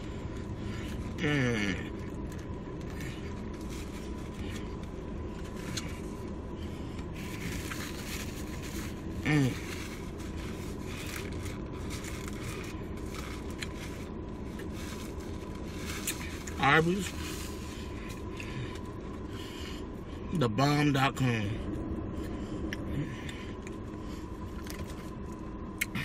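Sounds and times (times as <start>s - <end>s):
faint high hum: 0.0s - 26.0s
person chewing: 22.1s - 26.0s.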